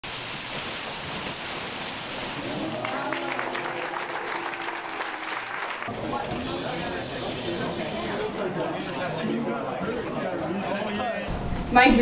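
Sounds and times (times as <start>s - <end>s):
crowd applauding: 2.1s - 9.2s
crowd voices: 2.4s - 12.0s.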